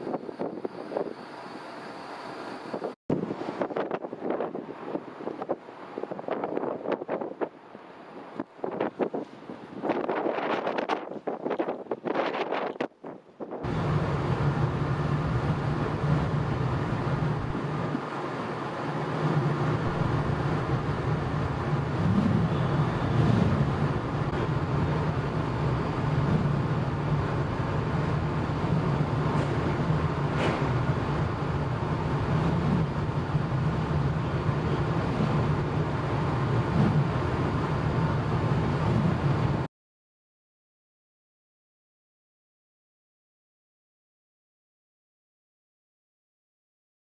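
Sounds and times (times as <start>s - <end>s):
ferry engines droning: 0.0s - 10.1s, 13.6s - 39.7s
even rushing noise: 13.7s - 39.7s.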